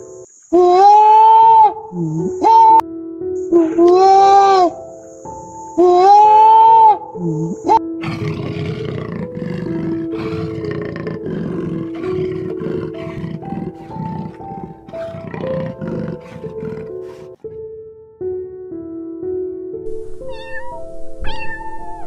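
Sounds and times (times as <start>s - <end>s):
background music simple melody: 0.0s - 22.0s
rough repeated animal calls: 8.0s - 17.4s
drawn-out animal call: 9.2s - 17.4s.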